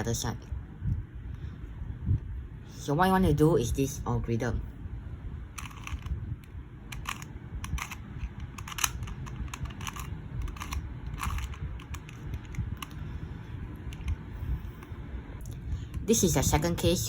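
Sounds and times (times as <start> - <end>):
plastic puzzle cube clicking: 5.6 - 6.1, 6.9 - 13.0.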